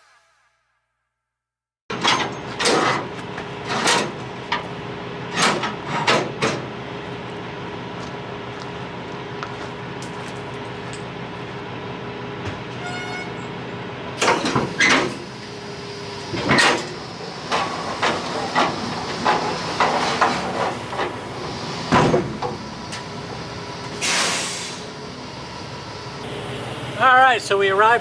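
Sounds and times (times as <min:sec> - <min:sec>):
loud metal clanks: 0:01.9 - 0:06.8, 0:16.4 - 0:23.0
truck engine running: 0:01.9 - 0:28.0
short hiss: 0:24.0 - 0:24.8.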